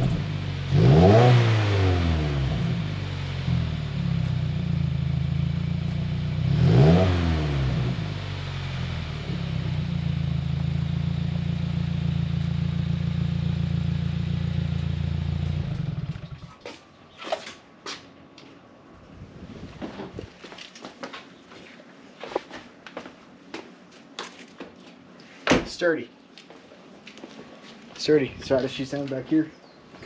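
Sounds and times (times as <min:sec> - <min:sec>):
car engine idling and revving: 0:00.0 - 0:16.6.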